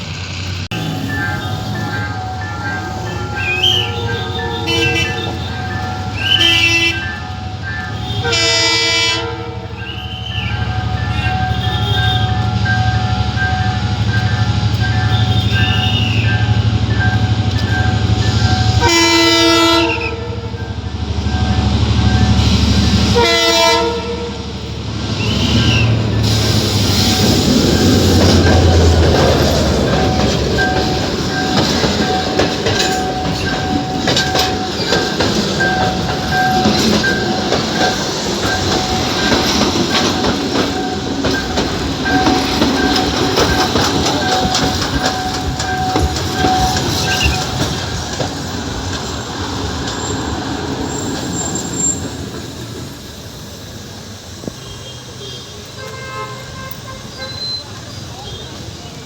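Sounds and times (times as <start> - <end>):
train wheels clattering on rails: 0.0 - 59.0
wheel squeal: 41.3 - 48.1, 49.0 - 53.6, 57.0 - 58.6.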